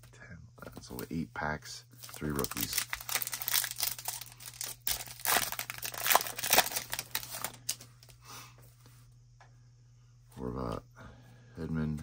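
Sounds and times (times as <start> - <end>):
card pack wrapper crinkling and tearing: 2.0 - 8.1.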